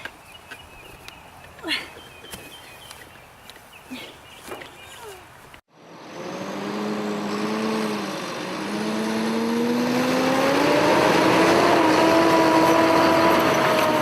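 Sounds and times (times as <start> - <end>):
tractor engine speeding up: 5.7 - 14.0.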